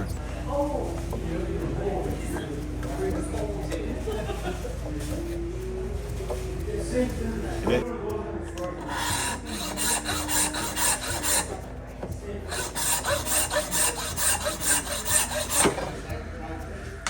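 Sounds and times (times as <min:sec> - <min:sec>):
hand tool scraping stone: 0:08.6 - 0:11.6, 0:12.5 - 0:16.1.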